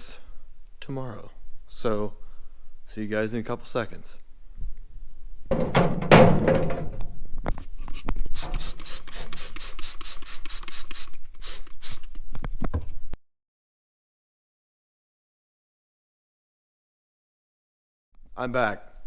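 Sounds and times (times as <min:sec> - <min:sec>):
parts clattering: 0:05.5 - 0:07.2
spray bottle spritzes: 0:08.3 - 0:12.1.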